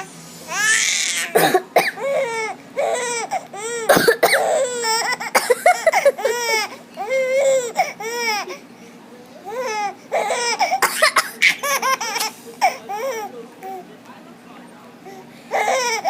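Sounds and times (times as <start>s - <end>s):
adult coughing: 1.4s - 2.1s, 3.9s - 4.6s, 5.3s - 6.3s, 10.7s - 11.8s
baby laughing: 2.1s - 8.6s, 9.5s - 13.3s.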